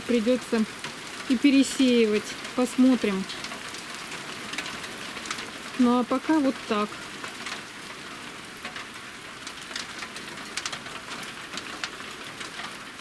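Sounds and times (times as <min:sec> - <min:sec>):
hail pellets falling: 0:00.0 - 0:13.0.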